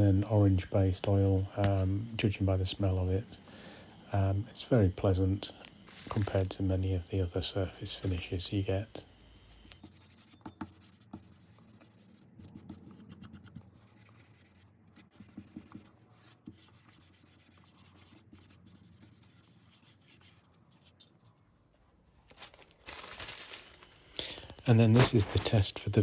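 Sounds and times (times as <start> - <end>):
cloth rubbing on wood: 4.9 - 9.8.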